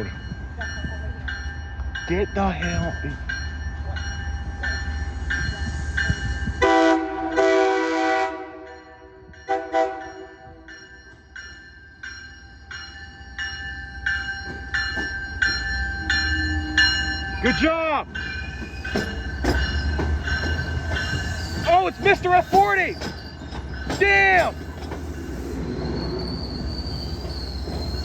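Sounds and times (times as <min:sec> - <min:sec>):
train rumbling: 0:00.0 - 0:28.0
train horn blasts: 0:06.6 - 0:10.7
bell ringing: 0:10.0 - 0:24.6.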